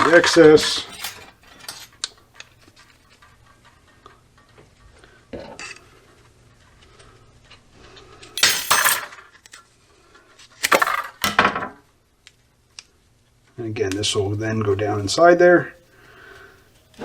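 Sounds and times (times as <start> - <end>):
tools clinking on a workbench: 0.0 - 1.9, 8.4 - 9.6, 10.6 - 11.8
tools scraping and clattering: 0.0 - 5.9, 8.4 - 9.6, 10.4 - 11.8.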